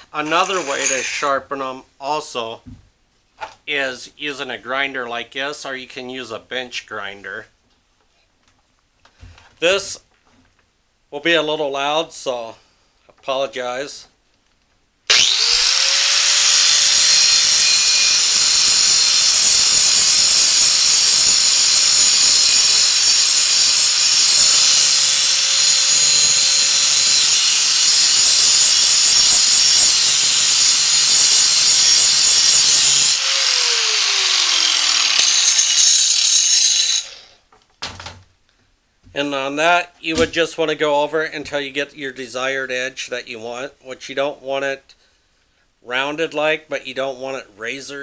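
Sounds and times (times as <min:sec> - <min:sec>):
grinder winding down whine: 0:00.0 - 0:01.3, 0:15.1 - 0:37.3
angle grinder grinding steel: 0:00.0 - 0:01.4, 0:15.1 - 0:37.4.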